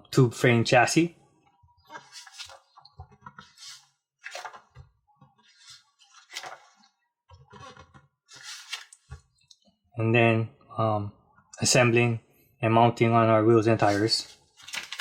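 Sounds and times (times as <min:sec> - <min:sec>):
papers rustling: 0:02.0 - 0:06.8, 0:07.4 - 0:09.2, 0:13.8 - 0:15.0.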